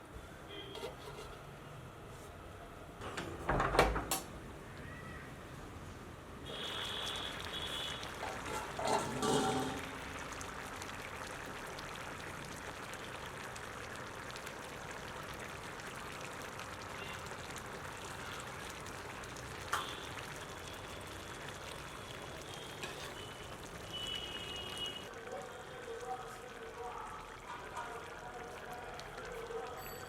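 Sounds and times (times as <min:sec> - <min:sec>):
curry bubbling in a pan: 0:06.5 - 0:30.0.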